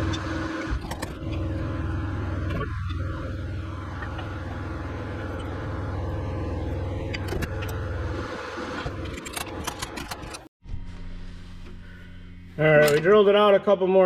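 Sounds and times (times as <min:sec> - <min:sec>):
sharp metallic clicks and knocks: 0:08.8 - 0:10.5.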